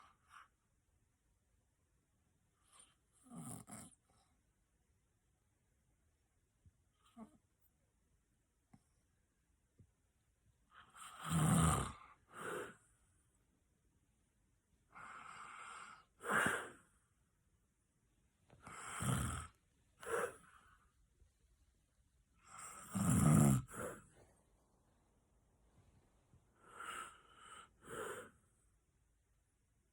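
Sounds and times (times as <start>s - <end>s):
person snoring loudly: 11.1s - 12.7s, 18.7s - 20.4s, 22.7s - 24.0s.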